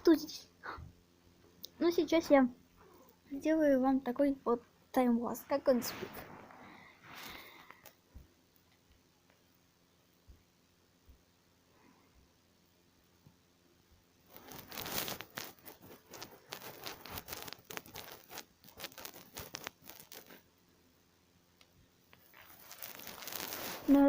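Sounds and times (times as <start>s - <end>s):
crackling rustle: 5.2s - 8.0s, 14.2s - 20.5s, 22.1s - 24.0s.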